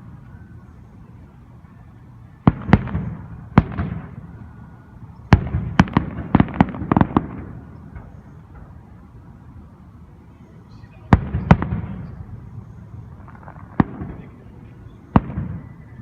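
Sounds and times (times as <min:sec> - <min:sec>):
fireworks bangs: 0:02.4 - 0:04.5, 0:05.3 - 0:08.8, 0:11.0 - 0:16.0.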